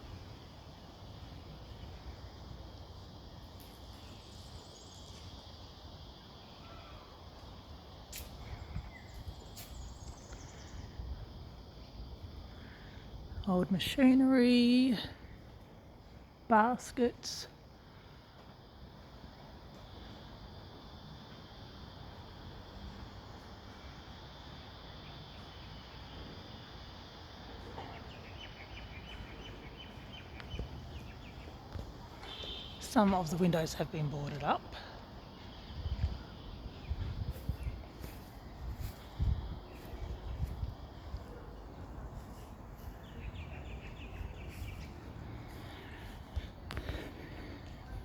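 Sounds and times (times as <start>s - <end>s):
insects chirring: 0.0s - 48.0s
outdoor background hum: 0.0s - 48.0s
small birds chirping: 27.9s - 32.8s, 38.8s - 48.0s
low wind rumble: 35.2s - 48.0s.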